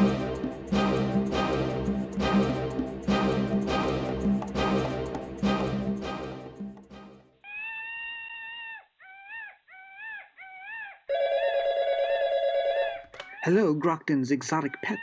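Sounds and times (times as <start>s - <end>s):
music cue: 0.0s - 7.3s
telephone warbling ring: 11.1s - 13.0s.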